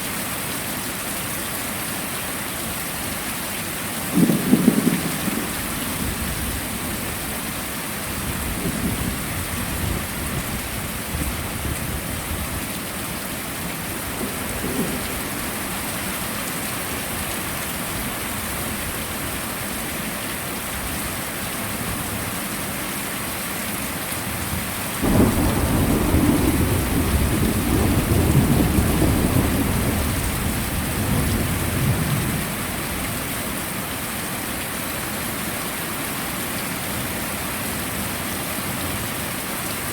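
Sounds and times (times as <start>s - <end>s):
heavy rain: 0.0s - 39.9s
thunder rumbling: 4.1s - 7.5s, 8.1s - 12.6s, 14.0s - 15.9s, 25.0s - 33.2s.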